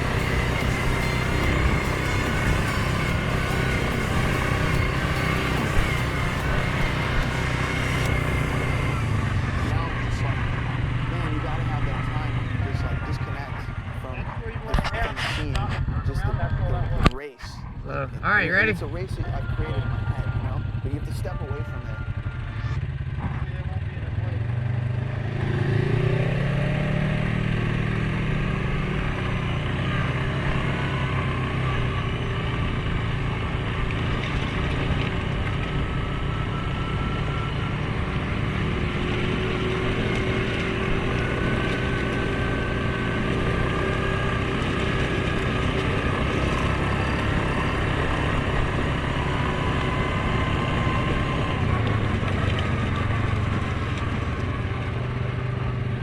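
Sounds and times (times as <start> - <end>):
faint high whine: 0.0 - 24.4
atv engine running: 0.0 - 56.0.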